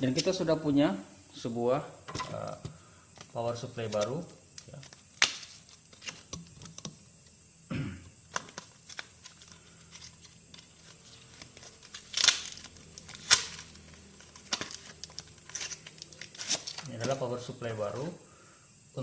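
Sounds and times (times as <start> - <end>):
plastic crinkling: 8.3 - 17.3.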